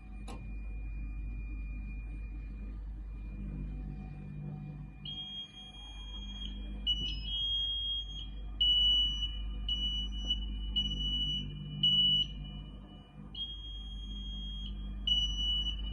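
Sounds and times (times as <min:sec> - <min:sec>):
low hum: 0:00.0 - 0:15.9
sewing machine whining: 0:03.2 - 0:15.9.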